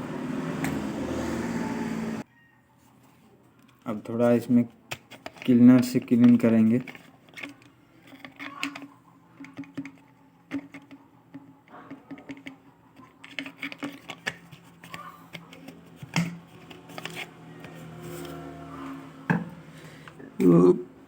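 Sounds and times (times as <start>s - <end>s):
hand tools clicking and scratching: 4.2s - 20.6s.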